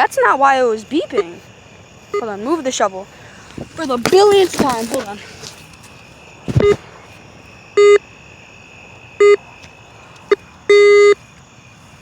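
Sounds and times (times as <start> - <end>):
metal detector beeps: 10.7 - 11.2.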